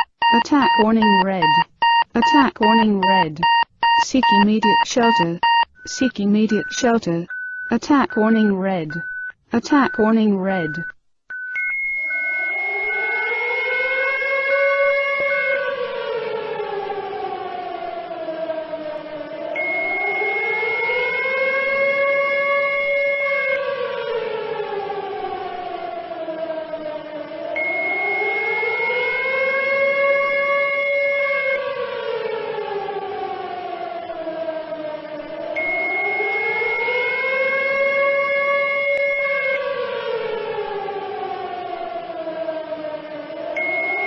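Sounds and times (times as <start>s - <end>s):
steady high tone: 11.6s - 13.4s, 35.6s - 36.5s, 43.6s - 44.0s
air-raid siren wailing: 11.8s - 44.0s.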